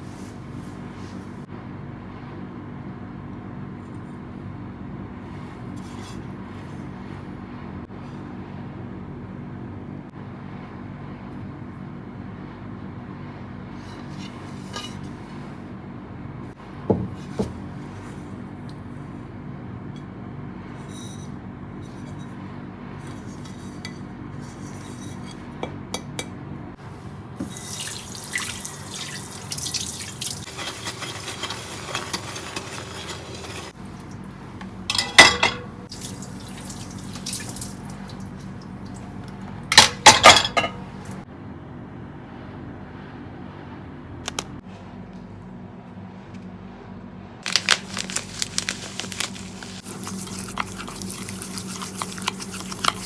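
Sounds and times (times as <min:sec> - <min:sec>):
dishes clattering: 0:34.9 - 0:35.8, 0:39.7 - 0:40.9.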